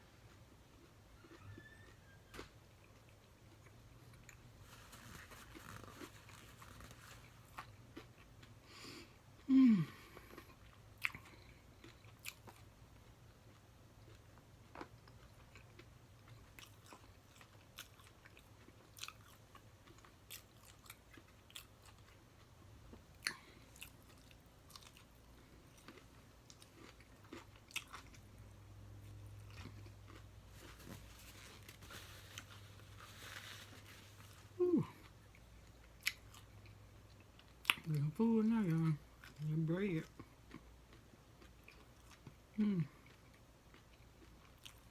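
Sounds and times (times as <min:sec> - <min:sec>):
low steady hum: 0:00.0 - 0:44.9
person chewing and crunching food: 0:00.0 - 0:44.9
person humming mm: 0:09.4 - 0:10.1, 0:34.6 - 0:35.0, 0:42.6 - 0:43.0.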